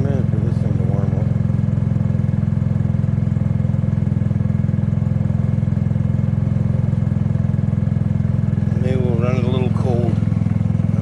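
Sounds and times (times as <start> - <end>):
scooter engine idling: 0.0 - 11.0.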